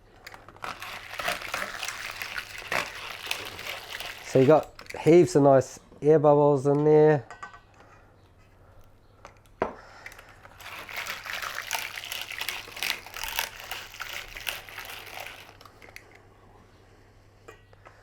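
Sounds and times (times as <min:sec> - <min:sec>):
utensil scraping and splashing: 0:00.6 - 0:05.1, 0:10.5 - 0:16.0.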